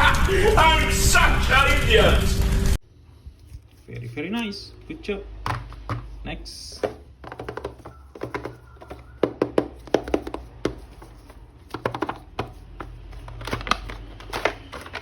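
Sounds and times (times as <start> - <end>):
packaging crinkling: 10.0 - 15.0.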